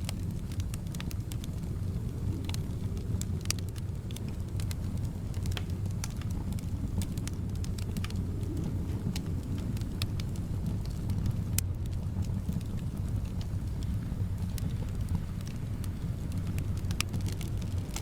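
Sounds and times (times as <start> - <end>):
soft wind: 0.0 - 18.0
wood fire crackling: 0.0 - 18.0.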